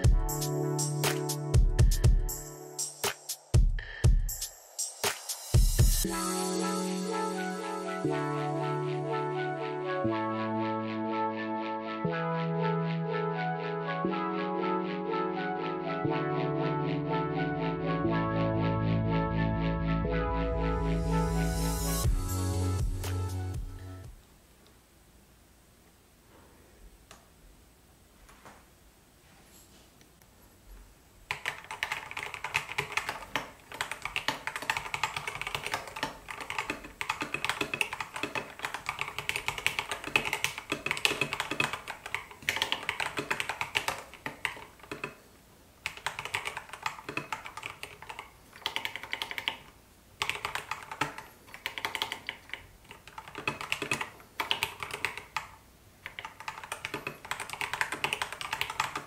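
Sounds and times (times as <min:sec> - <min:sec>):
mechanical keyboard typing: 0:31.3 - 0:45.2, 0:45.8 - 0:59.0.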